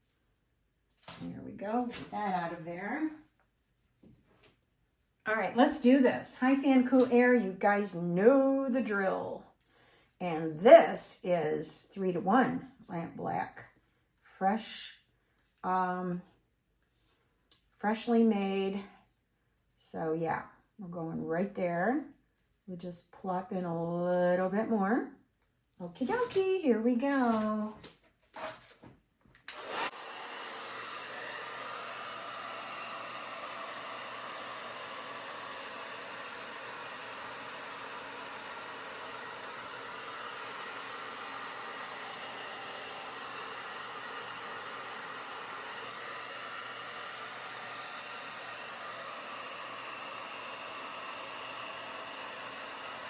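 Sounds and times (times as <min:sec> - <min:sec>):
hair dryer blowing: 0:05.4 - 0:09.0, 0:26.0 - 0:27.7, 0:29.5 - 0:53.0
hair dryer switch click: 0:29.4 - 0:29.8.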